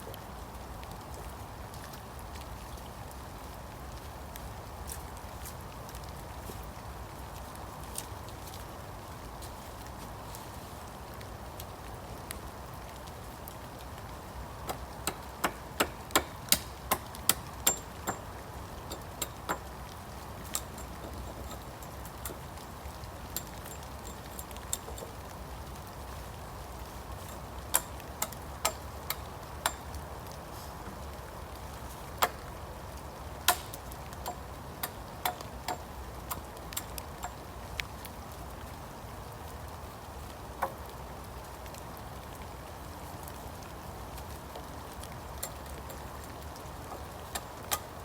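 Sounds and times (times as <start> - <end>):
steady rain hiss: 0.0 - 48.0
heavy raindrops ticking: 12.2 - 37.9, 44.1 - 48.0.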